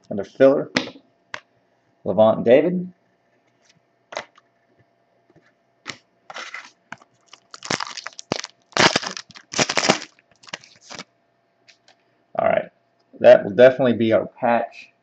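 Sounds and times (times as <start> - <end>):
foil wrapper crinkling and tearing: 6.3 - 11.0.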